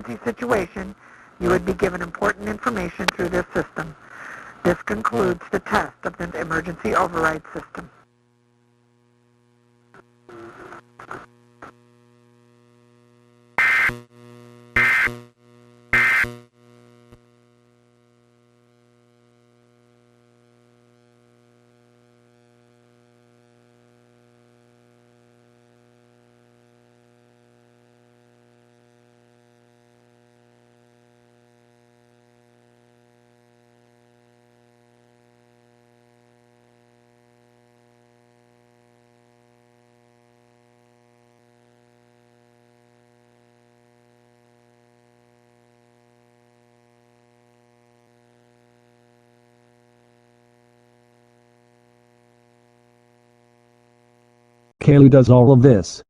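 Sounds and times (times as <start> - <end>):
steady low hum: 0.0 - 16.4
faint electronic blips: 10.3 - 11.3, 13.6 - 14.0, 14.8 - 15.2, 16.0 - 16.4
data tone bursts: 13.6 - 14.0, 14.8 - 15.2, 16.0 - 16.3.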